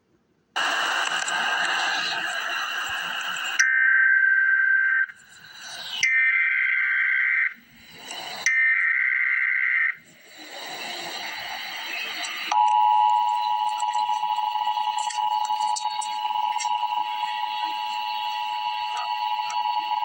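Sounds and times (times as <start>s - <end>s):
warbling digital data bursts: 0.6s - 20.0s
two-tone attention signal: 10.9s - 20.0s.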